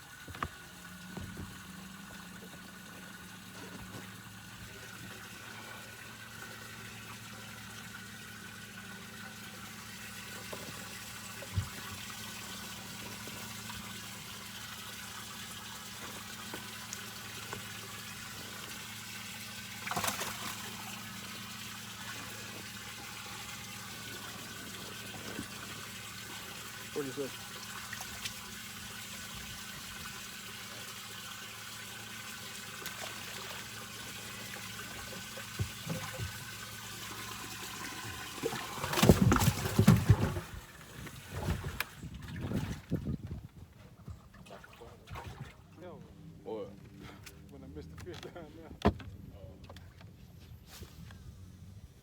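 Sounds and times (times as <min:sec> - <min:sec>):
trickling water: 0:00.0 - 0:46.0
splash or rustle: 0:19.7 - 0:21.2, 0:38.4 - 0:43.1, 0:44.4 - 0:45.7.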